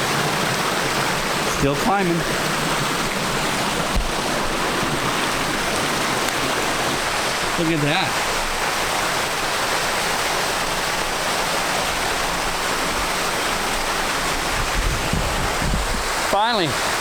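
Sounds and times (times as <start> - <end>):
waterfall rushing: 0.0 - 17.0
low thumps: 3.8 - 5.2.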